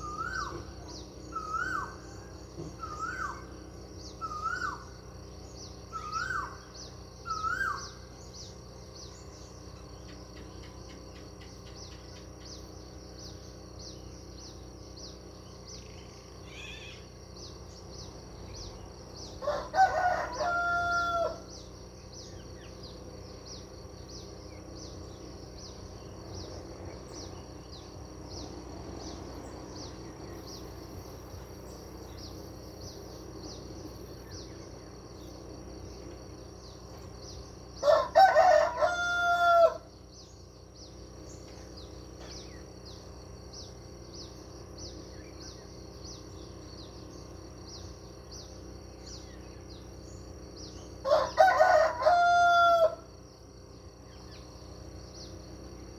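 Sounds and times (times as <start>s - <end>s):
faint steady hum: 0.0s - 55.9s
rooster crowing: 19.4s - 21.6s, 37.8s - 40.0s, 51.0s - 53.2s.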